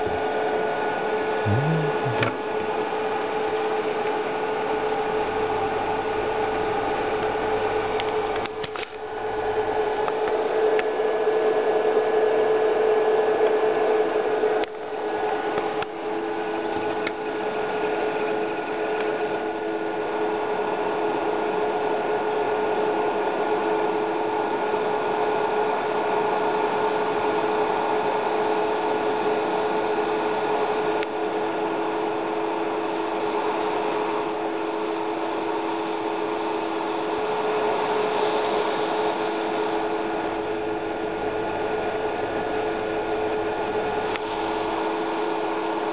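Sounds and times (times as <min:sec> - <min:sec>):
lower electrical tone: 0:01.4 - 0:02.4
electrical buzzing hum: 0:01.4 - 0:02.6.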